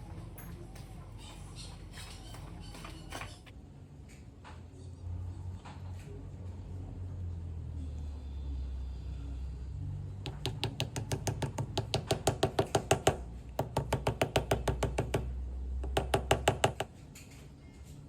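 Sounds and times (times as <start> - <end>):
rapid knocking: 10.3 - 16.9.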